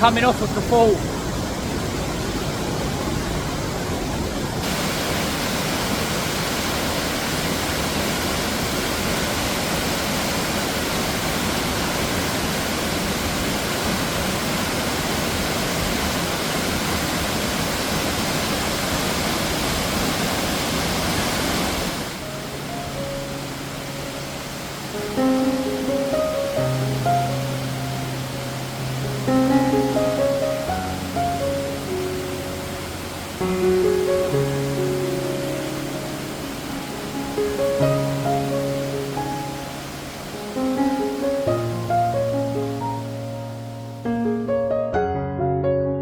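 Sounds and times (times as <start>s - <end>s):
waterfall rushing: 0.0s - 44.2s
music: 22.2s - 46.0s.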